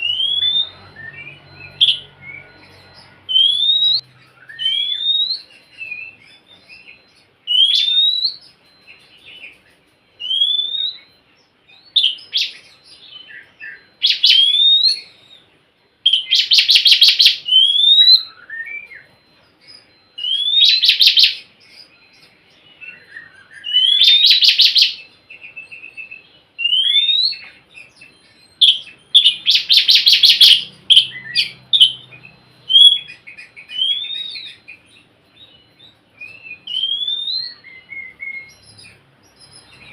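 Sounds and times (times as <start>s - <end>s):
bird whistling song: 0.0s - 39.9s
bird harsh rasping calls: 28.4s - 35.1s.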